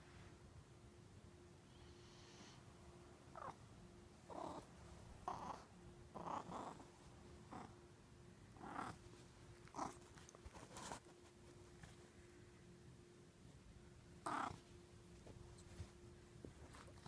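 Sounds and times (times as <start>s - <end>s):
faint steady hum: 0.0s - 17.0s
cat snoring: 1.7s - 2.6s, 4.3s - 6.8s, 14.2s - 14.6s.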